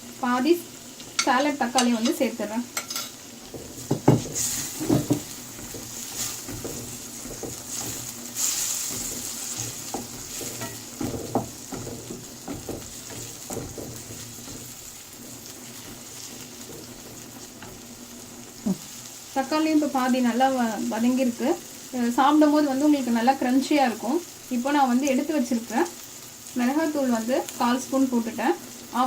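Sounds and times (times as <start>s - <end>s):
vegetables sizzling in oil: 0.0s - 29.0s
spoon stirring and knocking pan: 1.0s - 18.9s.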